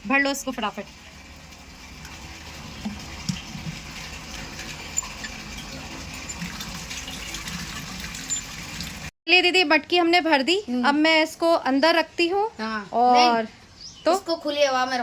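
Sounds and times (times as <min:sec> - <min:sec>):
water filling a clay pot: 0:00.0 - 0:09.1.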